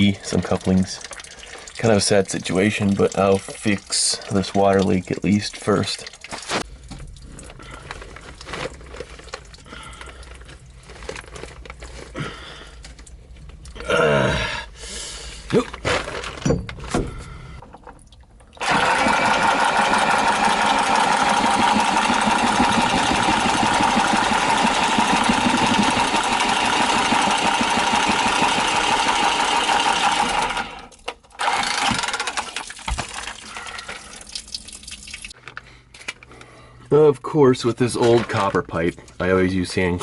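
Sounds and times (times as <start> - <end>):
power tool motor running: 18.6 - 32.6.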